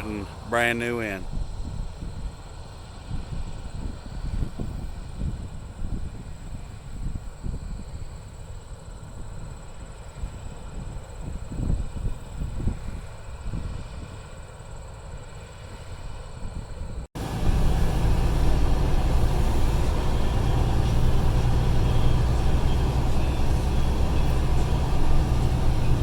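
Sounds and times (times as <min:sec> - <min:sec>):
vehicle engine and road noise: 0:00.0 - 0:01.3, 0:17.2 - 0:26.0
distant rumble: 0:17.2 - 0:26.0.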